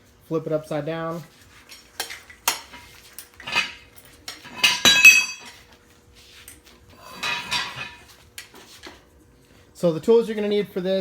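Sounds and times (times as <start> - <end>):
metal parts clinking and rattling: 3.4 - 5.6.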